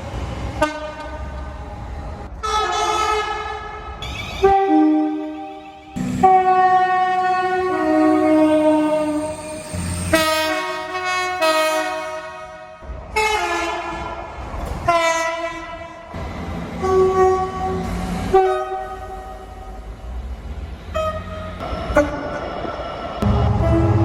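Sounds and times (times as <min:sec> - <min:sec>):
train horn blasts: 0:00.6 - 0:01.2, 0:02.4 - 0:09.3, 0:10.1 - 0:16.1, 0:16.8 - 0:19.8, 0:23.2 - 0:24.0
train running rumble: 0:12.6 - 0:24.0.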